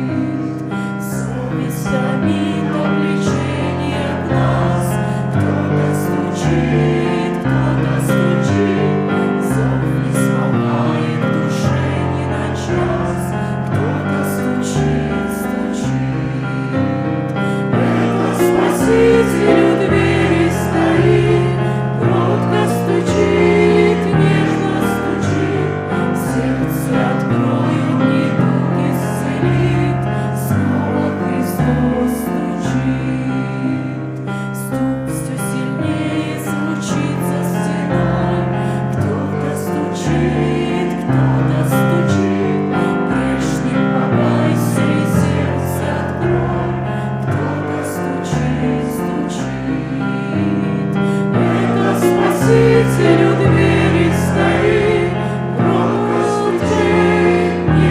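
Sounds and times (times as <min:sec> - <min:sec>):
choir singing a hymn: 0:00.0 - 0:57.9
instrumental accompaniment: 0:00.0 - 0:57.9.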